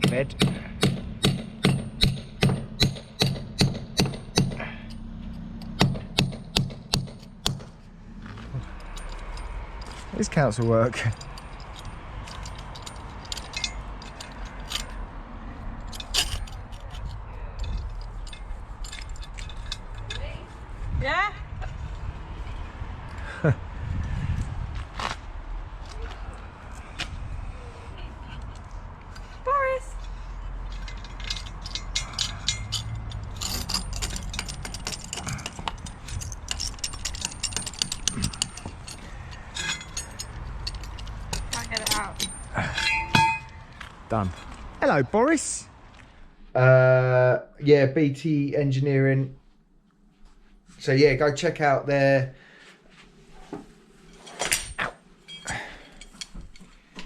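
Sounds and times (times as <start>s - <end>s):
metal tools clinking: 1.5s - 15.1s, 15.7s - 20.6s, 28.5s - 44.6s, 54.0s - 56.9s
low rumble: 7.2s - 10.3s
small metal pieces clinking: 15.8s - 20.2s, 30.7s - 43.5s.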